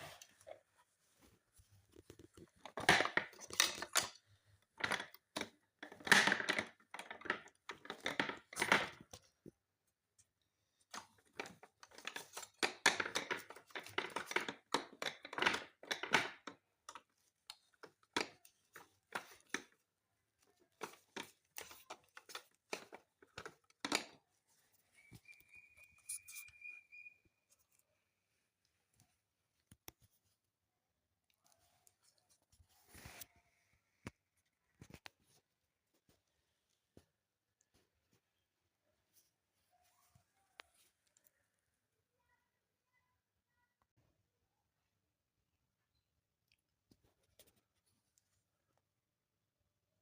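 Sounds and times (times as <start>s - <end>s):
plastic parts scraping and clicking: 1.9s - 9.4s, 10.8s - 19.8s, 20.4s - 24.3s.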